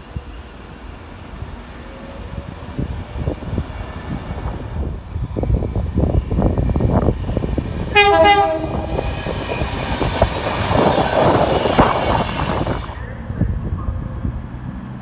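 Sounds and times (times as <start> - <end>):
train running past: 0.0 - 13.3
train horn blasts: 7.9 - 13.0.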